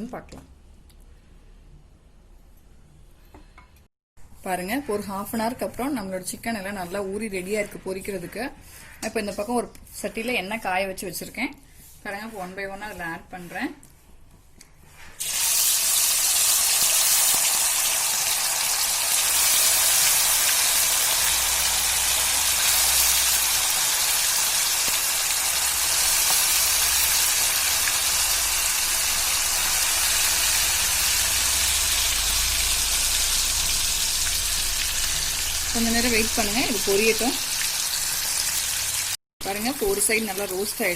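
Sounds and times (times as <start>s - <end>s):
chicken deep-frying in oil: 15.2s - 40.9s.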